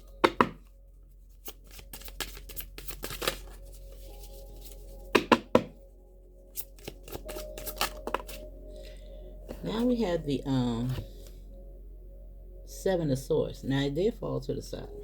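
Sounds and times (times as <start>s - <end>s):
cards being shuffled: 1.4s - 5.7s, 6.6s - 8.4s.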